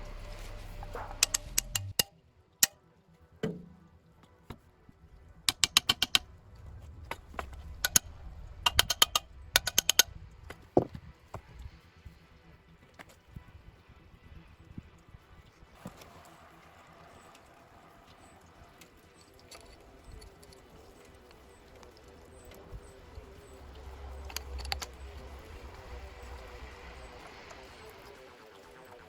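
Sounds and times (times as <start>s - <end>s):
quick runs of sharp taps: 5.5s - 6.2s.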